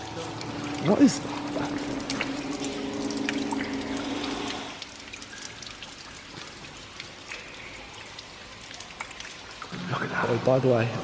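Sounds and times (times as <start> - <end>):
steady low hum: 0.0 - 6.8
water dripping in tunnel: 0.0 - 11.0.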